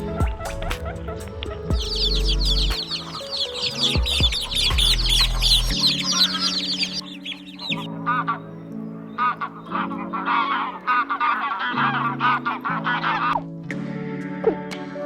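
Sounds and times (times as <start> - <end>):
background music: 0.0 - 15.0
birds peeping: 1.4 - 13.4
lower bird calls: 1.7 - 13.4.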